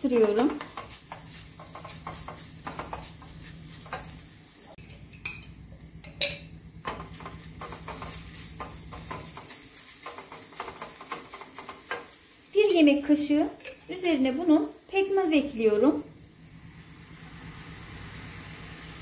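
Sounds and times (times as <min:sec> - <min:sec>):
spoon scraping and tapping pan: 0:00.0 - 0:04.2, 0:04.8 - 0:12.8
food sizzling in butter: 0:00.0 - 0:04.8, 0:06.8 - 0:19.0.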